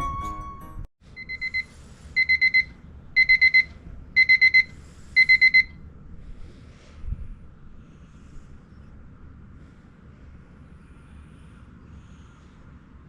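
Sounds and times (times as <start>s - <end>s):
electronic alarm beeps: 1.2s - 5.8s.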